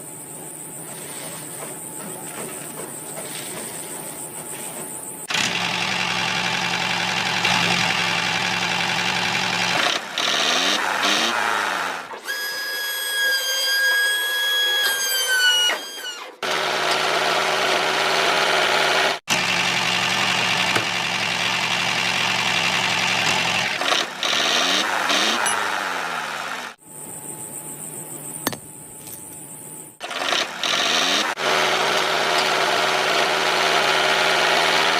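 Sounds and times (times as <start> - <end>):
motor running: 5.3 - 11.3, 17.3 - 26.8
high-pitched whine: 26.8 - 30.0.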